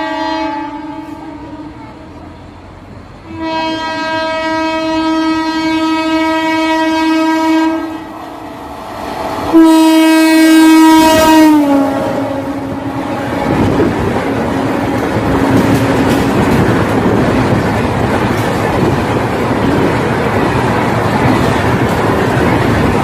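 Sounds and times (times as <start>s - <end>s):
locomotive horn blasts: 0.0s - 2.0s, 3.2s - 8.2s, 9.5s - 13.8s
passing train rumble: 0.0s - 23.0s.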